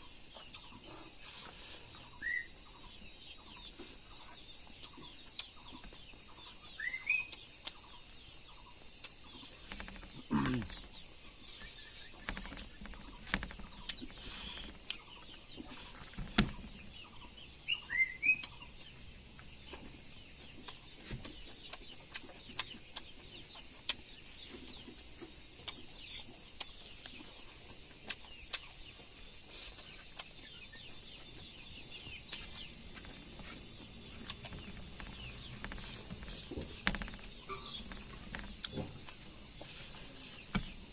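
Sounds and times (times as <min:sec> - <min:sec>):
high insect drone: 0:00.0 - 0:20.5
chickens clucking: 0:00.0 - 0:40.9.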